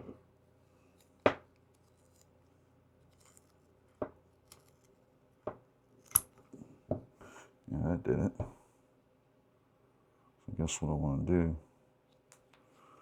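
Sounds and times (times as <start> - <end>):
scissors snipping material: 6.1 - 6.3.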